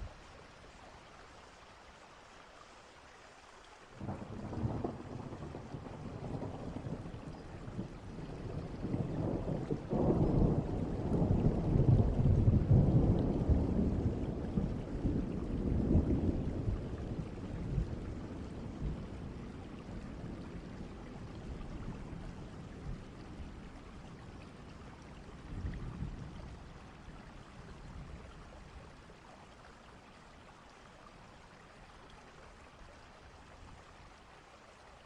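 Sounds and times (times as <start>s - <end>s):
steady rain: 0.0s - 35.0s
low thunder rumble: 4.0s - 28.4s.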